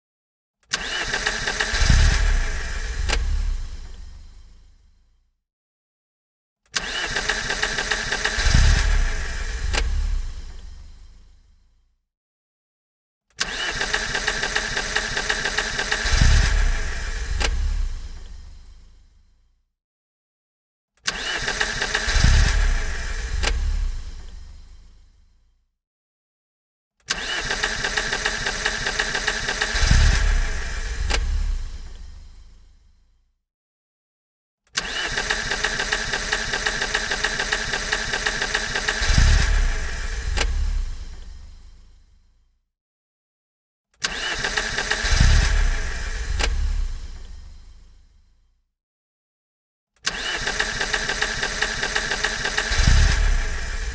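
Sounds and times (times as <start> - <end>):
car engine cranking: 0.8 - 4.2, 6.8 - 10.8, 13.4 - 18.5, 21.1 - 24.7, 27.1 - 32.1, 34.8 - 41.6, 44.0 - 47.8, 50.1 - 53.9.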